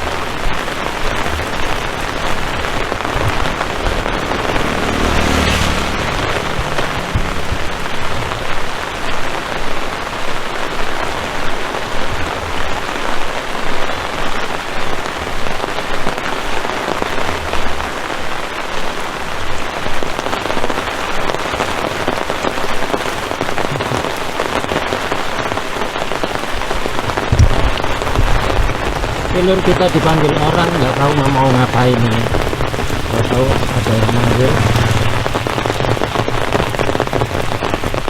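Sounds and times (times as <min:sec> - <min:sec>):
low rumbles: 0:00.0 - 0:18.3, 0:26.1 - 0:38.0
heavy rain falling: 0:00.0 - 0:38.0.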